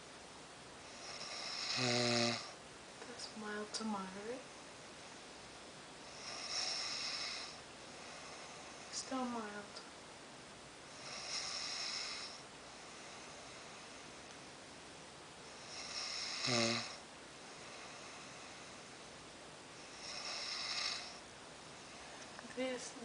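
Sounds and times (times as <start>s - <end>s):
man snoring: 0.9s - 2.6s, 6.1s - 8.7s, 11.0s - 12.4s, 15.6s - 17.0s, 19.9s - 21.2s.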